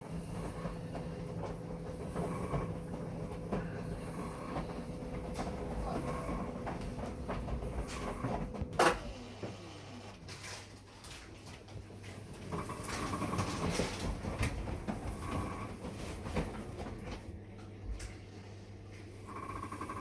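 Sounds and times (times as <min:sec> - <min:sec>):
washing machine motor hum: 0:00.0 - 0:20.0
clattering and knocking: 0:12.4 - 0:17.3.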